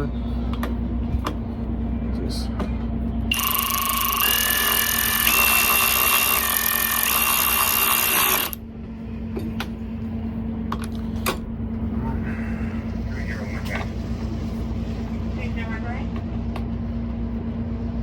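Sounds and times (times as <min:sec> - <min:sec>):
power ratchet motor whine: 0:03.3 - 0:08.7.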